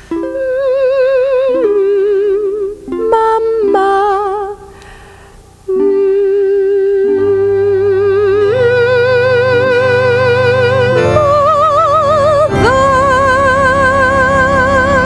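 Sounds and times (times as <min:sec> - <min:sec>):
low held chords: 0:00.0 - 0:15.0
person humming with vibrato: 0:05.7 - 0:15.0.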